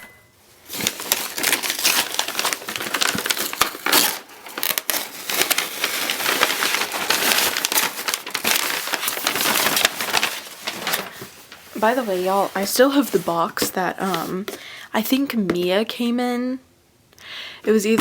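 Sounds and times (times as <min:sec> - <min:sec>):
packaging crinkling and crackling: 0:00.6 - 0:14.3.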